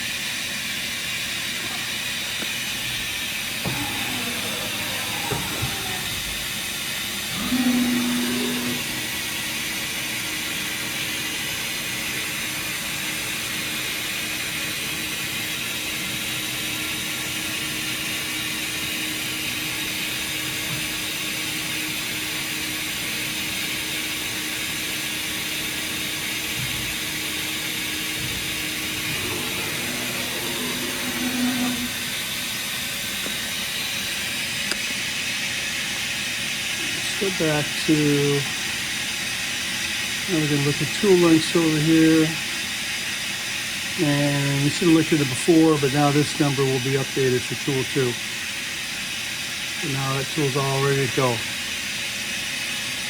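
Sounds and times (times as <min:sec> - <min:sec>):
machine steady hiss: 0:00.0 - 0:53.0
machine hum: 0:02.2 - 0:14.2, 0:15.8 - 0:34.5
motor whines gliding in pitch: 0:02.8 - 0:11.4, 0:16.3 - 0:33.7.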